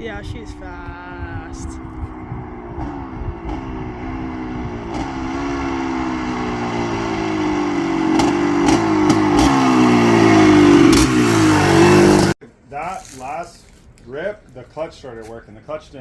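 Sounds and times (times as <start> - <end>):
dirt bike engine running: 0.0 - 12.4.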